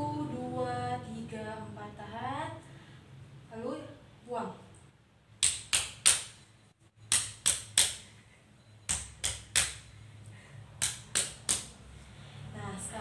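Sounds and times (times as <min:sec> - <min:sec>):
hand clapping on back: 0:05.4 - 0:06.4, 0:07.1 - 0:08.1, 0:08.9 - 0:09.8, 0:10.8 - 0:11.8.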